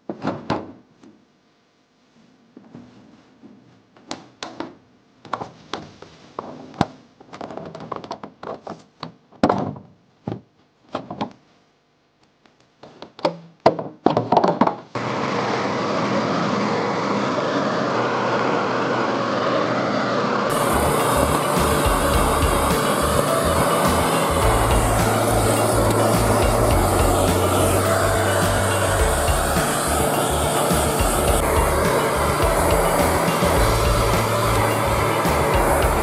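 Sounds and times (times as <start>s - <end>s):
loud steady dense sound: 20.5s - 36.0s.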